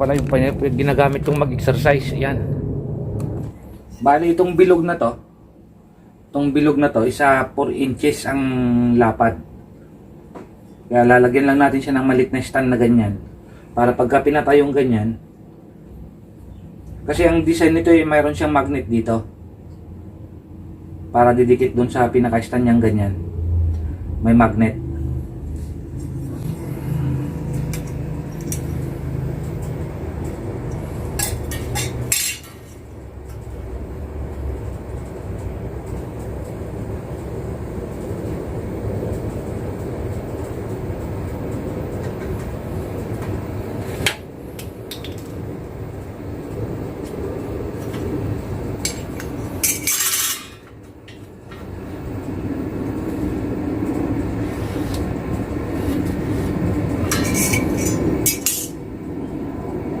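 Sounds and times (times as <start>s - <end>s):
metal sheet clanking and scraping: 48.9s - 50.7s, 57.0s - 58.8s.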